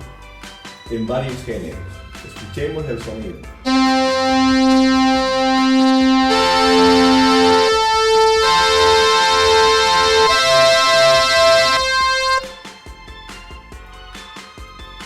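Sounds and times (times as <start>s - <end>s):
synthesizer chords: 3.7s - 12.6s.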